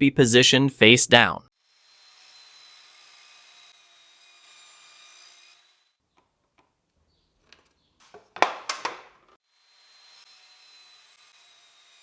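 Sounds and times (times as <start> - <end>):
wooden knocks and clatter: 7.5 - 9.3.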